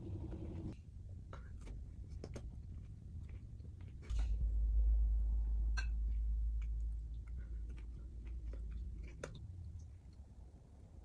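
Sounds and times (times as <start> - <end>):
chewing crisp vegetables: 1.6 - 4.4, 6.6 - 10.2
low rumble: 3.0 - 11.0.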